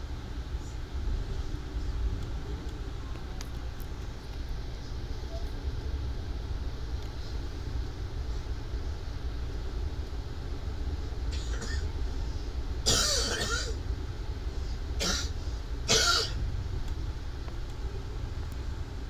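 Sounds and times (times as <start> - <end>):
man coughing: 12.9 - 13.8, 15.9 - 16.4
low rumble: 16.4 - 19.0.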